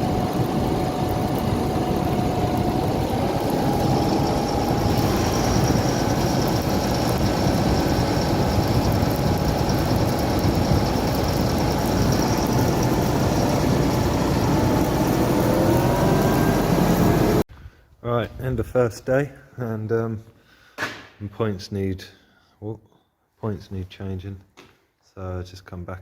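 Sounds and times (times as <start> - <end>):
faint whine: 0.0 - 17.4
tractor engine under load: 0.0 - 17.4.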